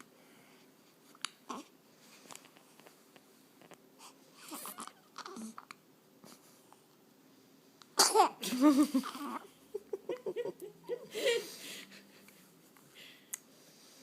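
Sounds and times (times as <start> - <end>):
person laughing: 8.4 - 12.4.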